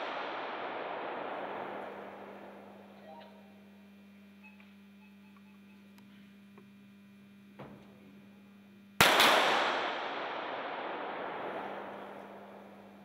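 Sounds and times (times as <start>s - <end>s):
pistol shots: 0.0s - 2.7s, 9.0s - 12.5s
low steady hum: 0.0s - 13.0s.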